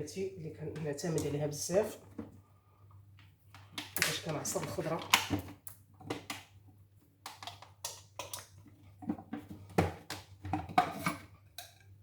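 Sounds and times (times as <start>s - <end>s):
kitchen things clicking and knocking: 3.6s - 6.6s, 7.2s - 11.9s.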